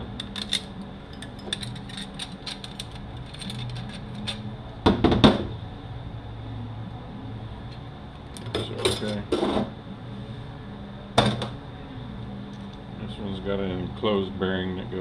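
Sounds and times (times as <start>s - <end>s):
steady low hum: 0.0s - 15.0s
metal parts clicking and clattering: 0.1s - 4.5s.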